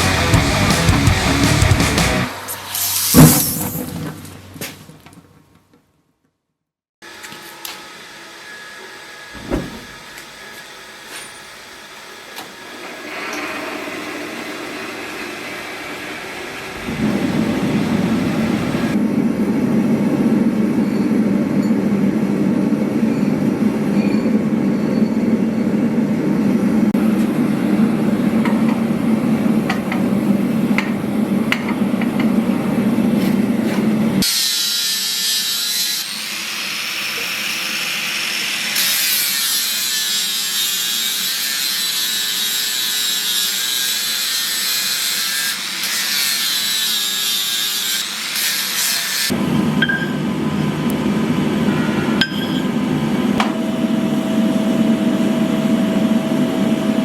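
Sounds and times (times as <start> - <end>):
machine drone: 0.0 - 2.9, 12.9 - 33.2, 49.3 - 57.0.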